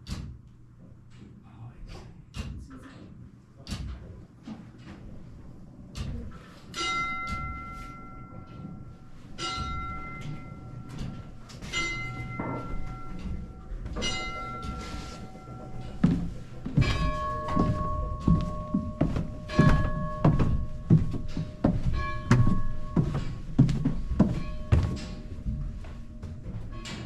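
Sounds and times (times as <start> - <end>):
large bell striking: 6.8 - 27.0
lower-pitched bell: 6.8 - 27.0.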